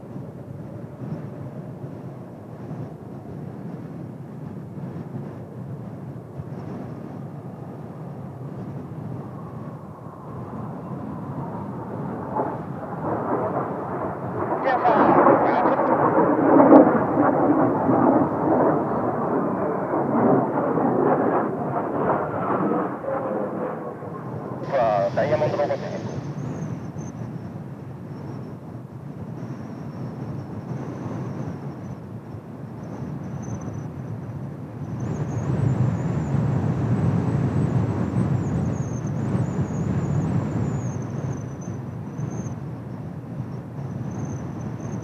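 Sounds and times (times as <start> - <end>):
jet engines roaring: 0.0 - 45.0.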